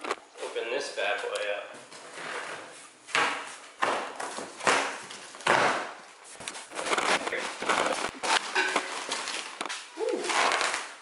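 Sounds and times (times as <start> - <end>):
cardboard and packing rustling: 1.2 - 11.0
cardboard box tearing open: 10.2 - 11.0.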